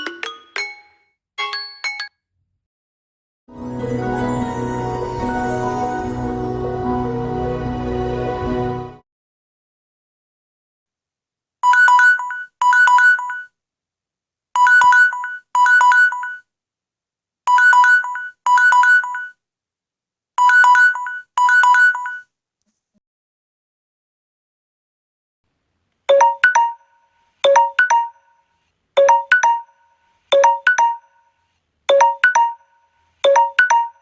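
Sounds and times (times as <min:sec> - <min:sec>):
timer alarm beeping in pairs: 0:11.6 - 0:13.5, 0:14.6 - 0:16.4, 0:17.5 - 0:19.4, 0:20.4 - 0:22.2, 0:29.0 - 0:31.3.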